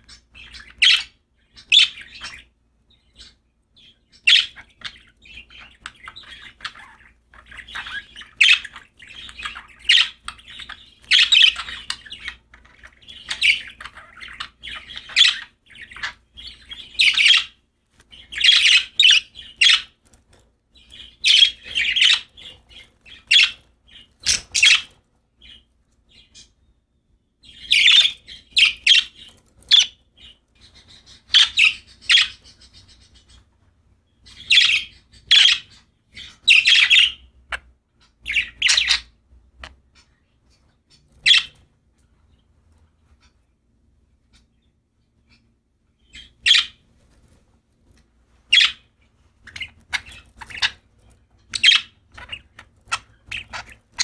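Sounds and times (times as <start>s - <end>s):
budgerigars chirping: 0.0s - 41.7s, 44.3s - 46.9s, 48.5s - 54.0s.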